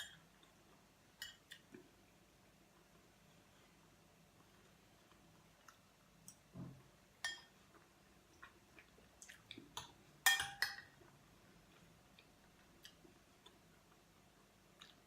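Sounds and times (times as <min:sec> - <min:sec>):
tableware clinking: 0:10.3 - 0:10.9.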